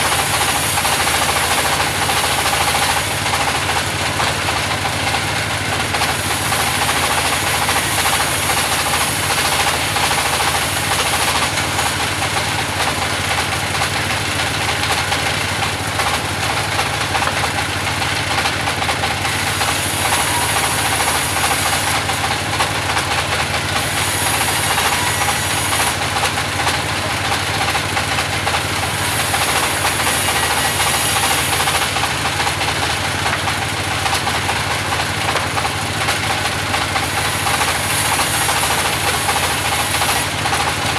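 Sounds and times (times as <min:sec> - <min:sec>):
saw blade hissing through wood: 0:00.0 - 0:03.2, 0:06.0 - 0:12.0, 0:19.3 - 0:22.3, 0:23.7 - 0:26.1, 0:28.8 - 0:32.1, 0:37.0 - 0:40.5
band sawmill running: 0:00.0 - 0:40.9.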